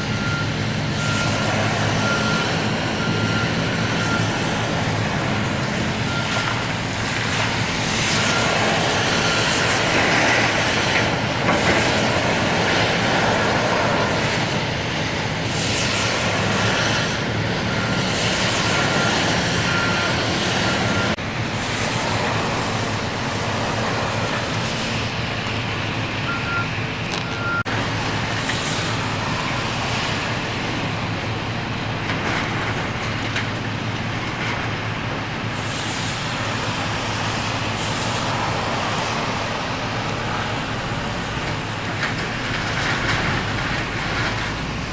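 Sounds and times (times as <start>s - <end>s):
diesel excavator engine: 0.0s - 44.9s
back-up alarm beeps: 0.1s - 5.0s, 8.2s - 9.6s, 17.6s - 21.2s, 26.2s - 27.7s
faint backup alarm beeping: 17.6s - 21.2s, 26.2s - 27.7s
metal clanking and scraping: 32.0s - 34.9s, 41.2s - 44.9s.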